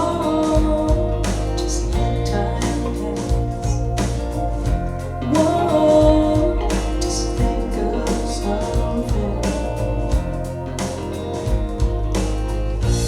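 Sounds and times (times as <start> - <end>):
person singing: 0.0 - 4.0, 5.2 - 10.5
bass: 0.0 - 13.0
drum beat: 0.0 - 13.0
guitar: 0.0 - 13.0.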